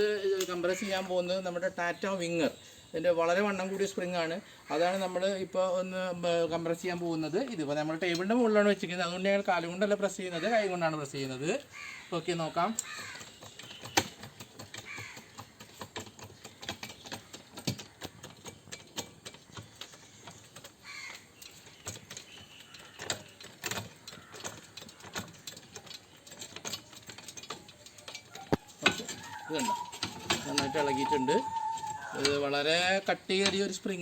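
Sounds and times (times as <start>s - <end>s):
mechanical clicks and knocks: 12.4s - 34.0s.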